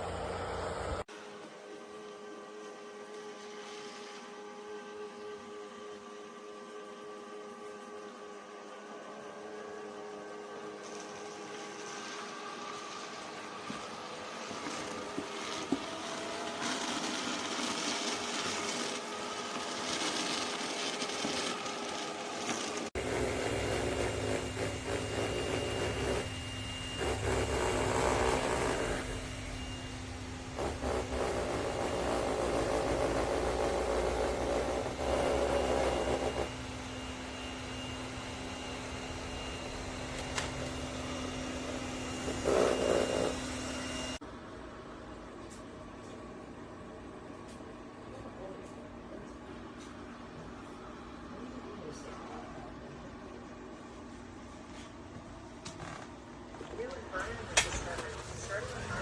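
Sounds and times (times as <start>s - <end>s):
robot vacuum motor whining: 9.5s - 44.2s.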